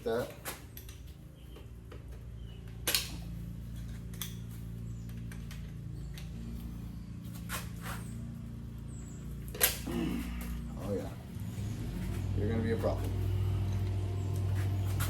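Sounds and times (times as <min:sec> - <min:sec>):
steady low hum: 0:00.0 - 0:15.0
sharp metallic clicks of pliers: 0:02.7 - 0:04.5, 0:09.4 - 0:09.9.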